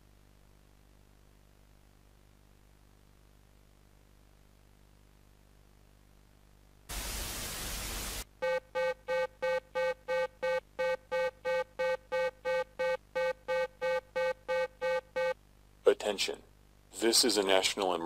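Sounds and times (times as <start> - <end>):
static hiss: 1.0 - 8.4
rapid pulsing alert beep: 8.4 - 15.4.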